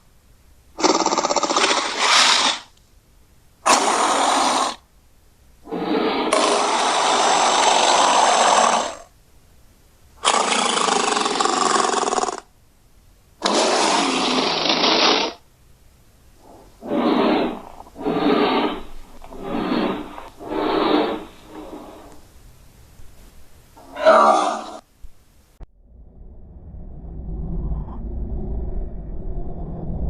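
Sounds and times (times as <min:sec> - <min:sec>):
gorilla roars: 0:00.8 - 0:02.7, 0:03.6 - 0:04.8, 0:05.6 - 0:09.1, 0:10.2 - 0:12.5, 0:13.4 - 0:15.4, 0:16.4 - 0:22.2, 0:23.8 - 0:24.8.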